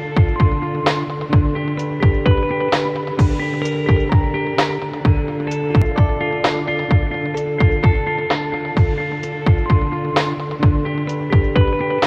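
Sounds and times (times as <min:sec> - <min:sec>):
deep kick drum: 0:00.0 - 0:08.2, 0:08.8 - 0:12.0
electronic music: 0:00.0 - 0:12.0.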